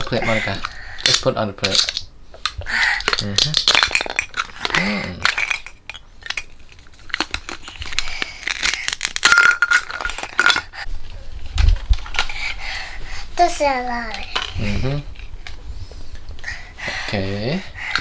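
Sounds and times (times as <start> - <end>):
toy dishes clattering: 0.0 - 7.8, 8.4 - 10.8.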